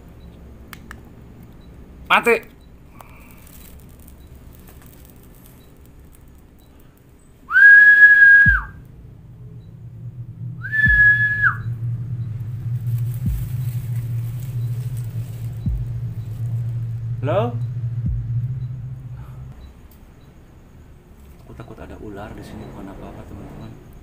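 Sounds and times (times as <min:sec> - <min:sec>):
low hum: 0:00.0 - 0:24.0
long whistled notes: 0:07.4 - 0:20.5
dull thumps: 0:08.4 - 0:08.8, 0:10.7 - 0:12.0, 0:12.9 - 0:19.7.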